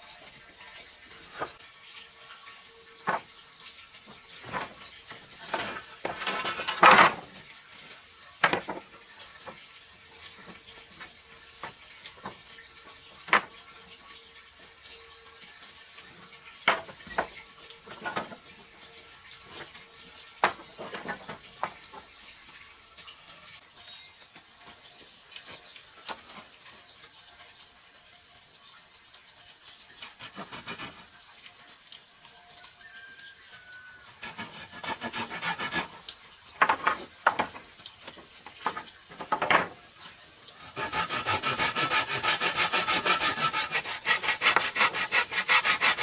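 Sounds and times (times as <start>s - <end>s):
objects knocking and clattering: 5.5s - 7.3s, 36.6s - 37.7s, 38.6s - 39.8s
scraping rattle: 30.1s - 31.0s, 34.1s - 36.0s.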